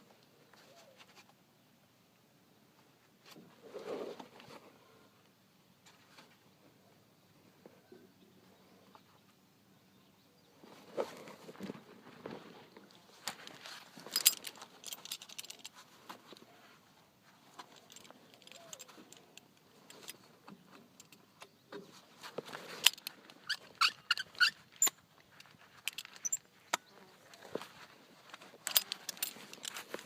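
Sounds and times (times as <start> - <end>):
metal tools clinking and rattling: 13.3 - 16.4, 17.6 - 20.3, 22.4 - 26.4, 27.3 - 30.0.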